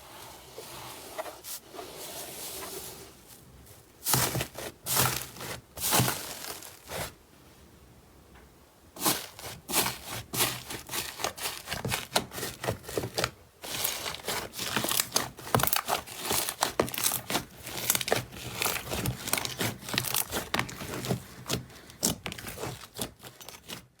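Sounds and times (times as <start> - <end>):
slime crackling and crinkling: 4.0 - 7.2, 9.0 - 24.0.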